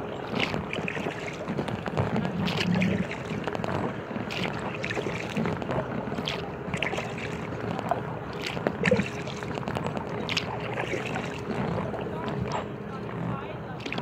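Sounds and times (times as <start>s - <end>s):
paddle splashing in water: 0.0s - 14.0s
water dripping and trickling: 0.0s - 14.0s.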